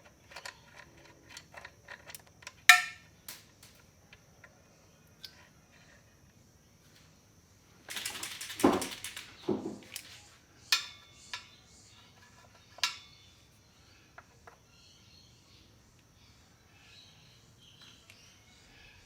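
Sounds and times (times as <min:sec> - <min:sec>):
metal clanks: 0:02.7 - 0:03.8, 0:07.9 - 0:11.5
ratchet tool clicks: 0:07.9 - 0:10.2.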